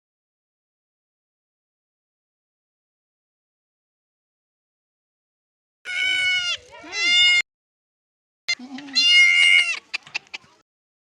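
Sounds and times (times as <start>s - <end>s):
goat bleating loudly: 5.9s - 7.4s, 8.5s - 10.0s.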